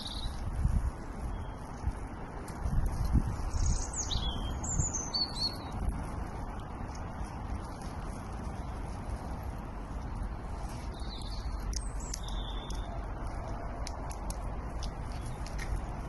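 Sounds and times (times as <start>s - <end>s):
birds chirping: 0.0s - 0.4s, 1.0s - 2.0s, 3.2s - 6.6s, 8.5s - 16.0s
low outdoor rumble: 0.0s - 16.0s.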